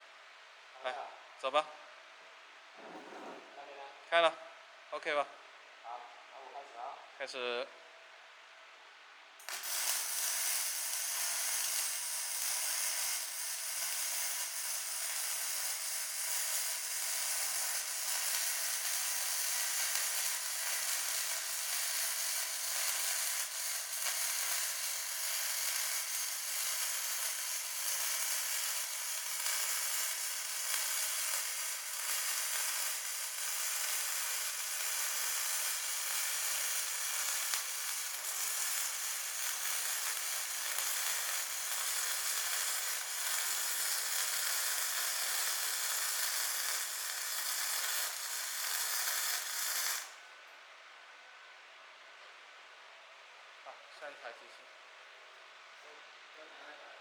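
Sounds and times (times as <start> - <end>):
welding arc crackling: 9.4 - 50.2.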